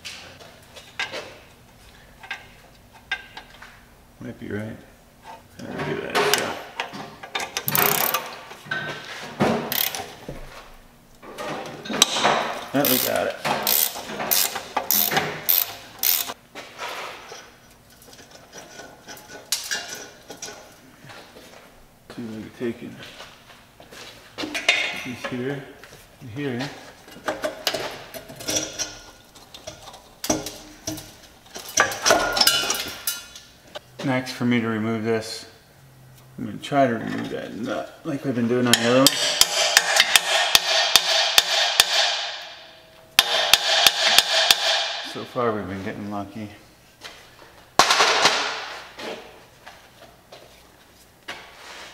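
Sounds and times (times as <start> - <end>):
metal handling sounds: 0.0 - 3.8, 26.5 - 33.8
socket ratchet clicking: 7.6 - 8.2, 9.7 - 10.0, 12.8 - 16.4.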